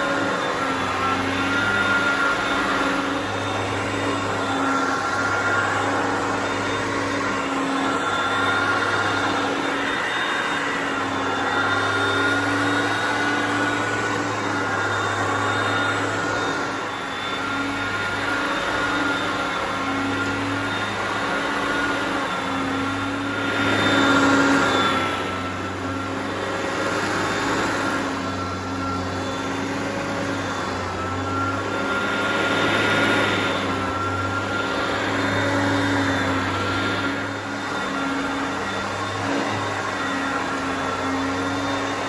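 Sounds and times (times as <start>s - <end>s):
vacuum cleaner running: 0.0s - 42.0s.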